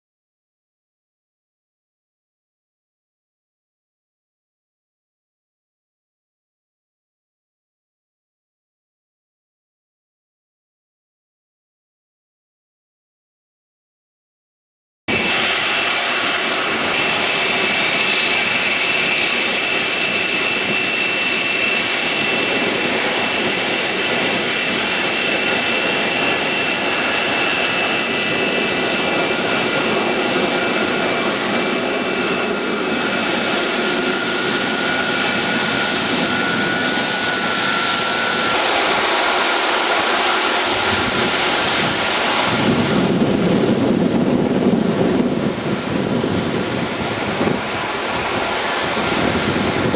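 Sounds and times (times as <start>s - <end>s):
high whine: 15.1s - 49.9s
jet engines running: 15.1s - 49.9s
deep rumble: 21.6s - 49.9s.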